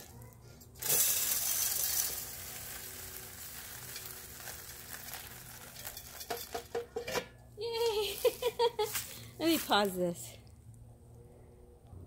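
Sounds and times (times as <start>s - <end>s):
birdseed pouring: 0.8s - 6.5s.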